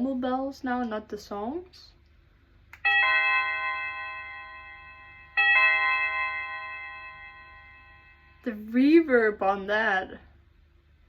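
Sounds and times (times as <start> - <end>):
electronic doorbell bell chime: 2.8 - 8.5.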